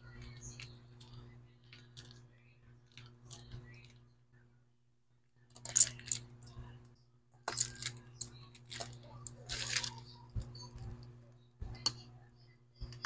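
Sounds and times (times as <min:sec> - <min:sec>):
faint electrical hum: 0:00.0 - 0:13.0
small parts and tools clattering: 0:05.5 - 0:06.6, 0:07.4 - 0:10.8.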